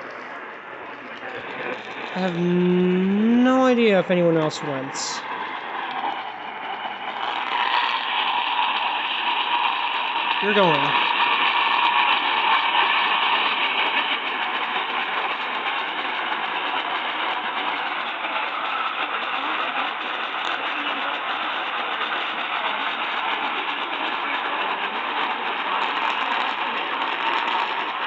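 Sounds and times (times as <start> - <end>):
faint radio station audio: 0.0 - 6.2, 10.4 - 11.0.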